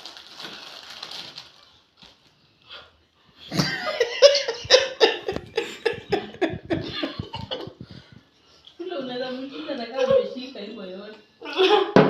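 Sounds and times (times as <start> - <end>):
person laughing hard: 3.5 - 7.9.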